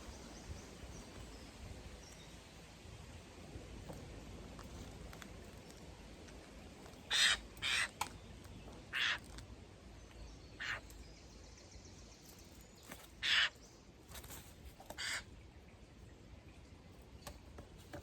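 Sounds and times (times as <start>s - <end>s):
jays screeching calls: 7.0s - 8.0s, 8.9s - 9.2s, 10.6s - 10.9s, 13.2s - 13.6s, 15.0s - 15.3s.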